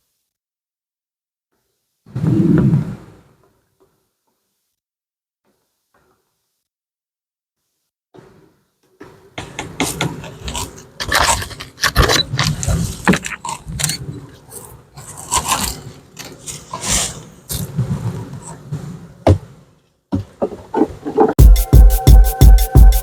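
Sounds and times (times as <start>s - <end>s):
beehive equipment scraping: 9.4s - 14.0s.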